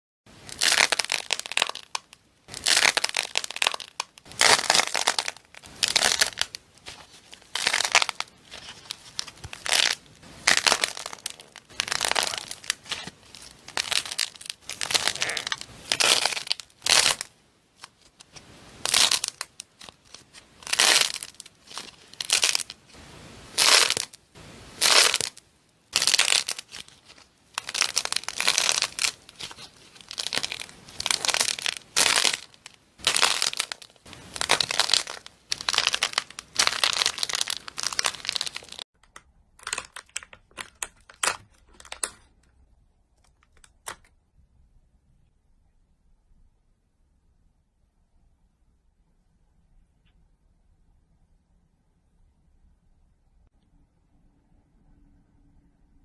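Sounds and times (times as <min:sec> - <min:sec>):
slime being squeezed by hand: 0:00.5 - 0:17.3, 0:23.5 - 0:25.4, 0:26.0 - 0:38.8.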